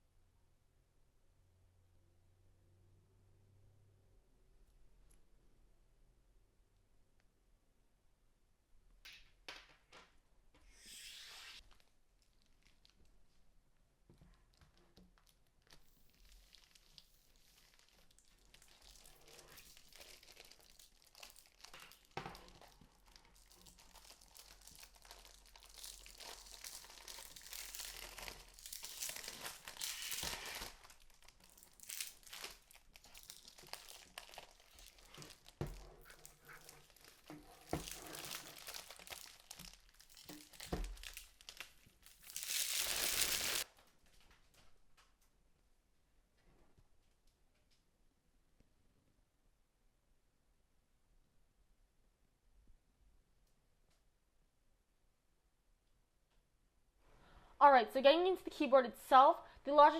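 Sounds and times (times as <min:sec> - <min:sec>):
packaging wrap crinkling: 0:15.0 - 0:44.3.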